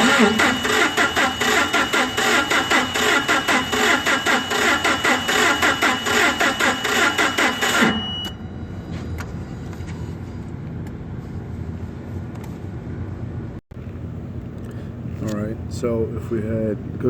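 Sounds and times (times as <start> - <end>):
engine cranking on starter: 0.0 - 8.0
low steady hum: 7.9 - 17.0.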